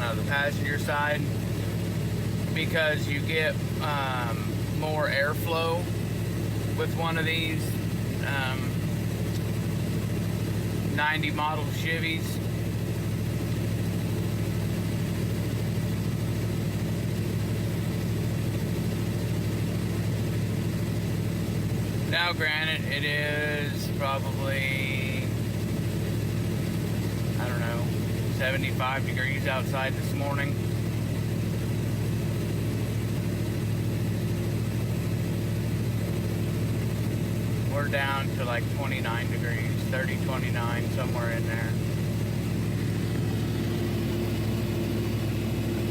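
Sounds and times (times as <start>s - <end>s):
engine low hum: 0.0s - 45.9s.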